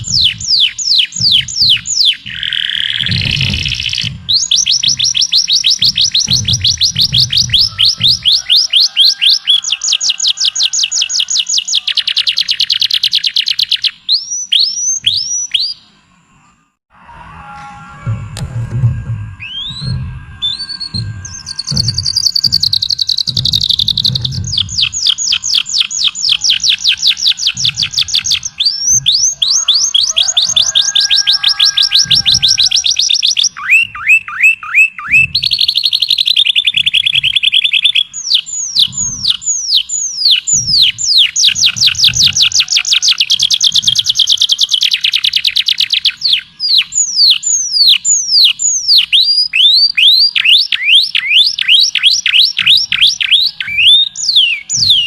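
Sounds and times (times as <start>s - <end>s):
soft low thumps: 0.0s - 8.8s, 18.0s - 29.4s
songbird singing trills: 0.0s - 16.7s, 19.4s - 55.0s.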